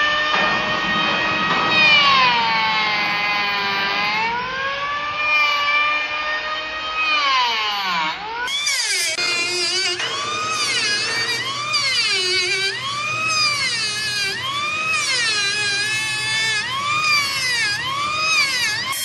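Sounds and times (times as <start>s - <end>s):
power tool motor whining: 5.0s - 19.0s.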